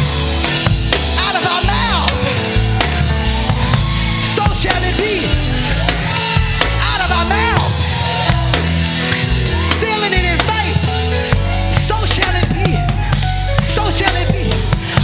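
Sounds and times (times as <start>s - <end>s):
drum kit beat: 0.0s - 15.0s
worship band playing: 0.0s - 15.0s.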